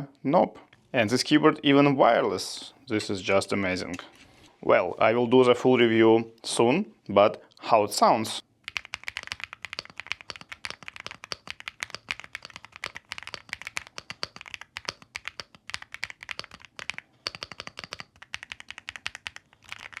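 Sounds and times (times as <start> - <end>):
mechanical keyboard typing: 8.6 - 20.0.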